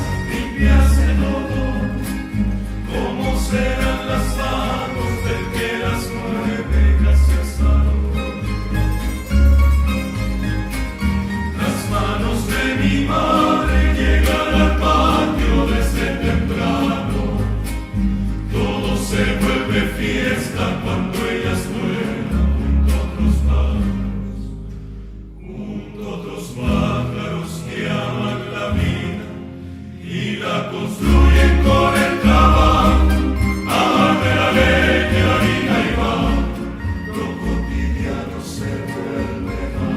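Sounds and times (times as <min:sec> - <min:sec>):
choir singing: 0:00.0 - 0:09.1, 0:11.4 - 0:24.6, 0:25.4 - 0:39.9
instrumental accompaniment with bass: 0:00.0 - 0:25.4, 0:26.6 - 0:39.9.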